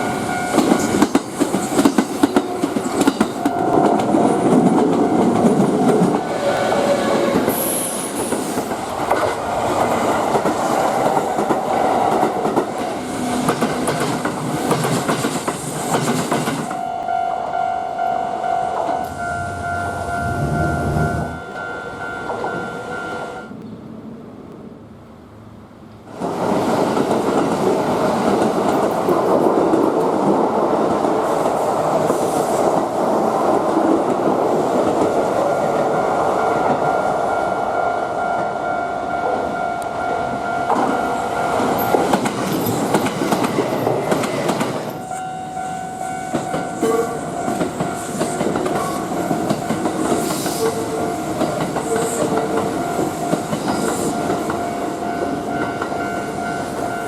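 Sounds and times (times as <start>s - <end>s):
crossing warning bell ringing: 0.0s - 8.1s, 16.7s - 23.6s, 35.9s - 42.8s, 44.9s - 57.0s
train running past: 0.0s - 57.0s.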